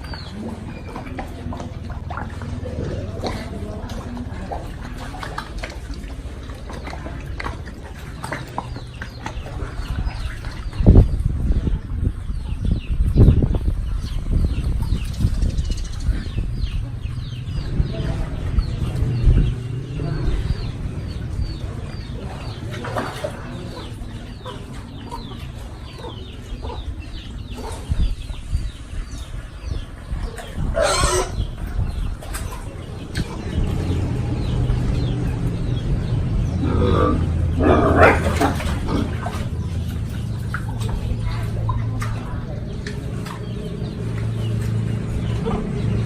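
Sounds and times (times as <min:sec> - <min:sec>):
chicks chirping: 0:08.3 - 0:36.7
chicken calls: 0:29.7 - 0:42.3.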